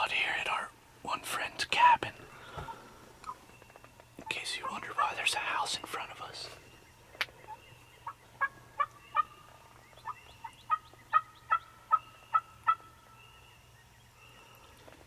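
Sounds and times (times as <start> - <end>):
wild turkey yelping: 7.0 - 13.4.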